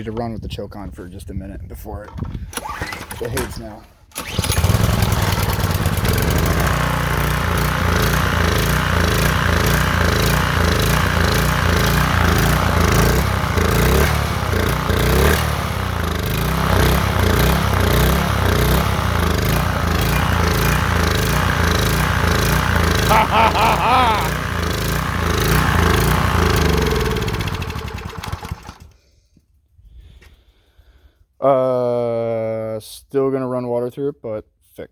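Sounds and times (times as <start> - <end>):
pressure washer engine running: 4.2 - 28.9.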